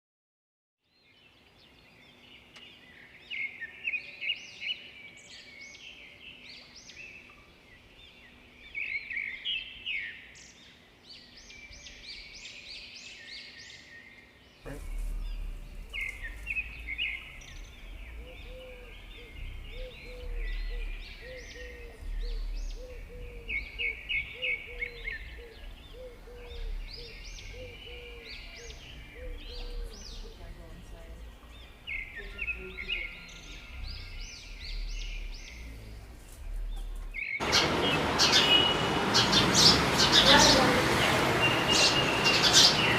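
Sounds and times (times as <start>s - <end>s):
small birds chirping: 0.8s - 42.9s
repeating low note: 14.7s - 37.2s
low rumble: 14.7s - 38.2s.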